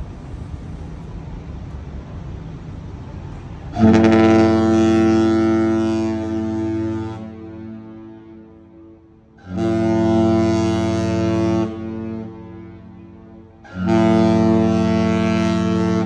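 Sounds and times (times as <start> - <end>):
steady low rumble: 0.0 - 16.0
ship horn deep blast: 3.3 - 16.0.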